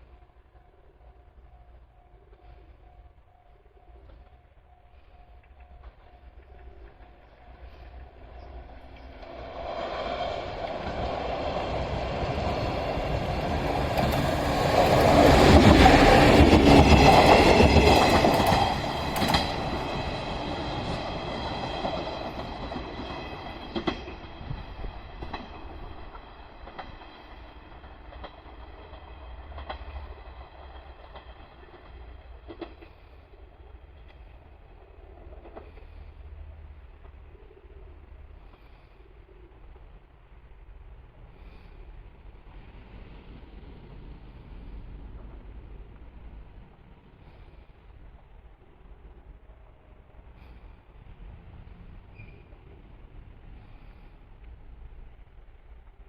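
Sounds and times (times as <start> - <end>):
train rumbling past: 0.0 - 56.0
wheels clicking over rail joints: 5.4 - 40.8.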